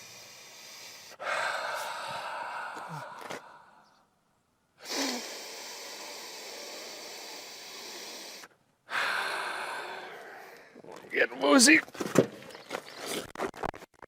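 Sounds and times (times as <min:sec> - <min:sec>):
man breathing deeply: 0:00.0 - 0:04.2, 0:04.8 - 0:10.8.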